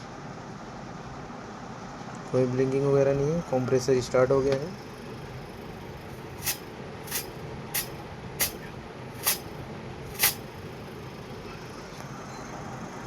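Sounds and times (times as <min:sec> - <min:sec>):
refrigerator compressor humming: 0:04.2 - 0:13.0
short sharp hisses: 0:06.3 - 0:09.5, 0:10.1 - 0:10.5.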